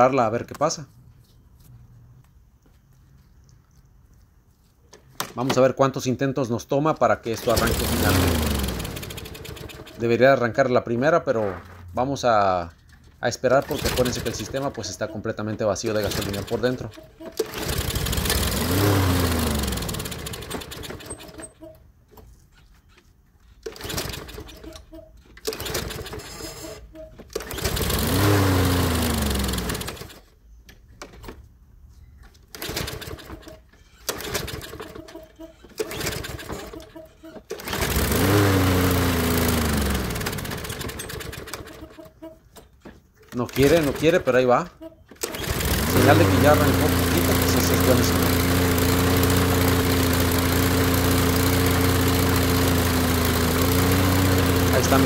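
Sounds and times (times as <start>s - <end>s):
lawnmower engine whirring without starting: 7.2s - 11.9s, 12.5s - 31.5s, 32.2s - 55.0s
recoil starter pull: 7.3s - 10.6s, 12.8s - 21.8s, 23.4s - 30.3s, 32.3s - 55.0s.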